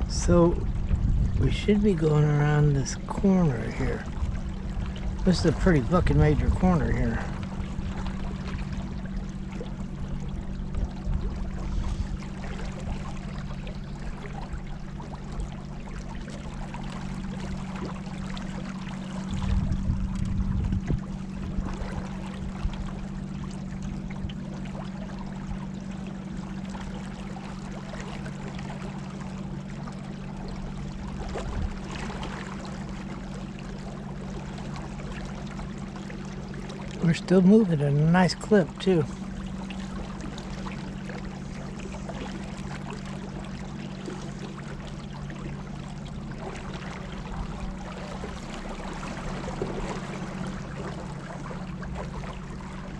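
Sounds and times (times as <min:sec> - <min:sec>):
wind buffeting microphone: 0:00.0 - 0:13.3, 0:18.9 - 0:23.2, 0:31.2 - 0:32.2
steady low hum: 0:00.0 - 0:52.9
water rushing around a kayak: 0:00.0 - 0:52.9.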